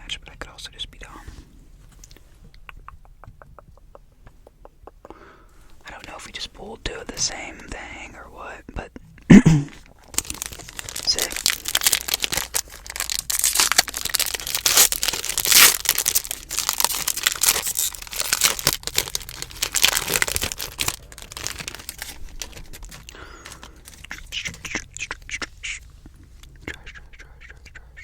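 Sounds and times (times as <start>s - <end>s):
foil wrapper crinkling and tearing: 10.0s - 25.3s.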